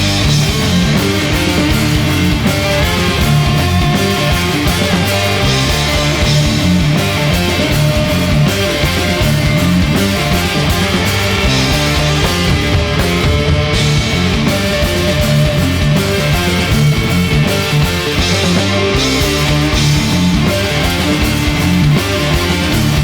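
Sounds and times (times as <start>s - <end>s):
bass guitar: 0.0s - 23.0s
drums: 0.0s - 23.0s
electric guitars: 0.0s - 23.0s.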